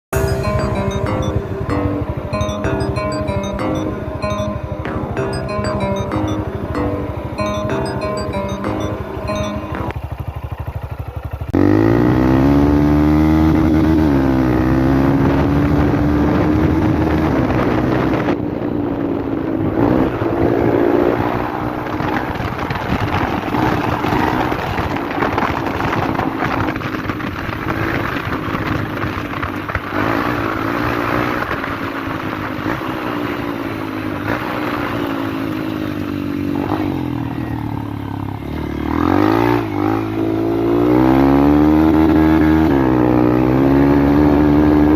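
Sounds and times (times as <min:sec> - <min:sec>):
motorcycle engine revving: 0:09.2 - 0:44.9.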